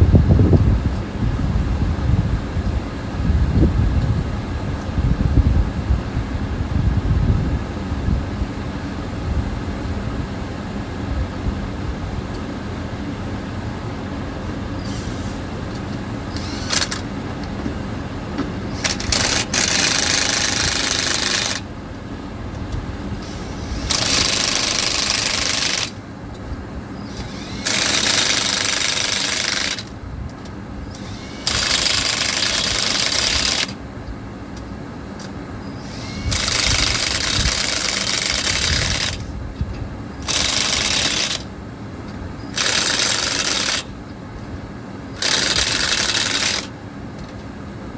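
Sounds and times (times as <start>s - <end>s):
impact wrench bursts: 14.8s - 15.4s, 16.3s - 17.1s, 18.7s - 21.7s, 23.2s - 26.0s, 27.1s - 30.0s, 30.9s - 33.8s, 35.8s - 39.3s, 40.2s - 41.5s, 42.5s - 44.0s, 45.2s - 46.7s.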